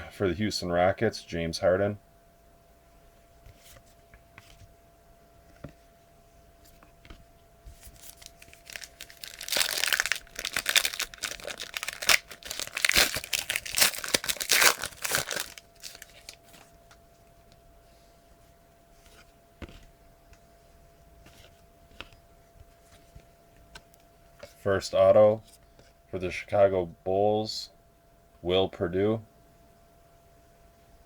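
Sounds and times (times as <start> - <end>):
wrapper tearing and crinkling: 7.9 - 16.6.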